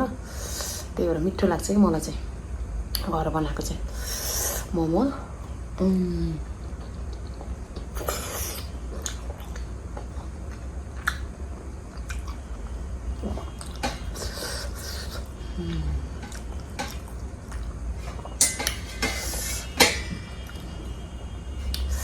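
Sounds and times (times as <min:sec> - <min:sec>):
mouth clicks and smacks: 0:06.7 - 0:11.3
person chewing: 0:06.7 - 0:19.7.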